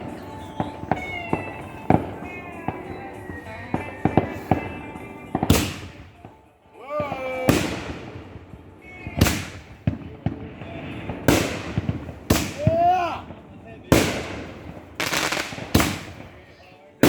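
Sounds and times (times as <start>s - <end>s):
loud firework bangs: 0.0s - 6.4s, 7.0s - 16.5s
small firework pops: 0.0s - 6.4s, 7.0s - 16.4s.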